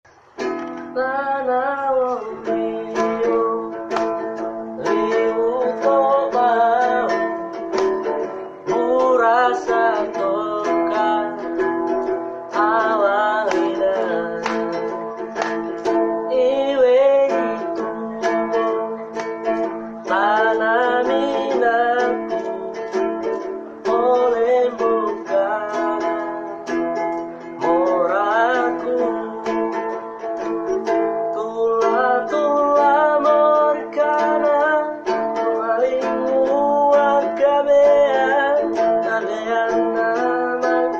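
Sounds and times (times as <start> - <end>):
strummed plucked strings: 0.1 - 40.9
person singing: 0.4 - 40.9.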